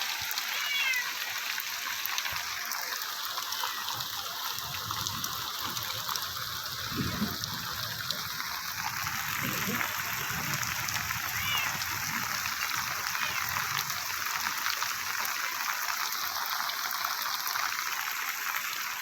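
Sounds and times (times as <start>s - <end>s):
heavy rain: 0.0s - 19.0s
water drips: 0.0s - 19.0s
cat meowing: 0.4s - 1.3s, 9.4s - 14.1s.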